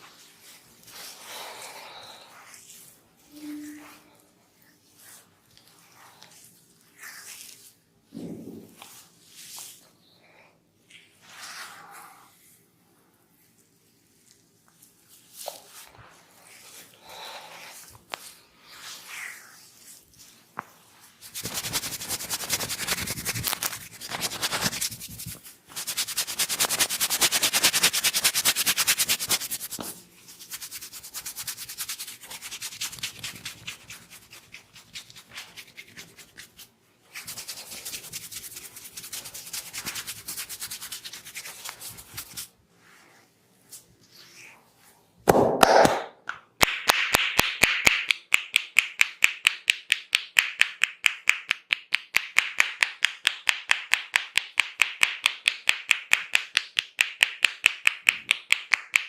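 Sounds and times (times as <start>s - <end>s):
hands rubbing oiled hair: 0.0s - 7.8s, 8.7s - 9.9s, 10.9s - 12.6s, 13.3s - 45.0s
loud slap: 45.3s - 48.2s.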